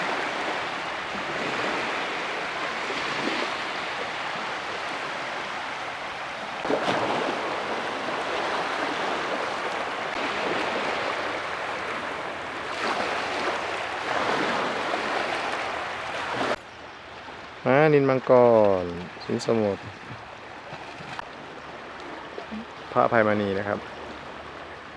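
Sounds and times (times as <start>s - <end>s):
sea waves washing in: 0.0s - 16.6s.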